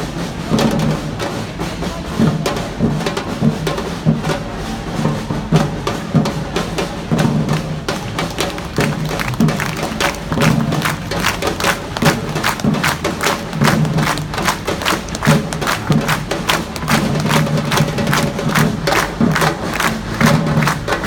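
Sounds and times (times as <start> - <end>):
snare and high drum strikes: 0.0 - 21.0
deep bass drums: 7.1 - 21.0.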